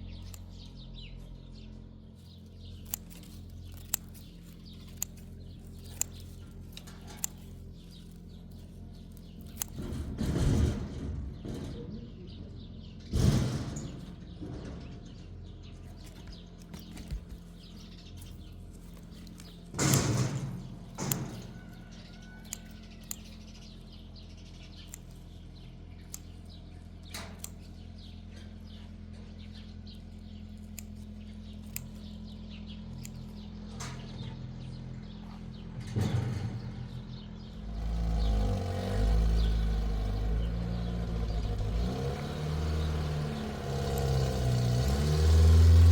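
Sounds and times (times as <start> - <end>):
engine idling: 0.0 - 45.9
small clicks: 0.2 - 0.8, 2.4 - 9.9, 16.0 - 21.7, 22.4 - 23.7, 24.6 - 25.3, 26.0 - 27.8, 30.6 - 32.1.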